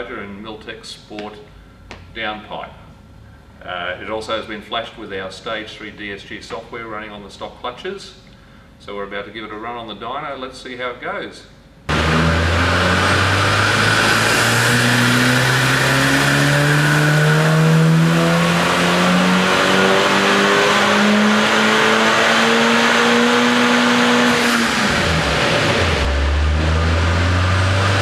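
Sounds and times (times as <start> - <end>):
car engine revving at full throttle: 11.9 - 28.0.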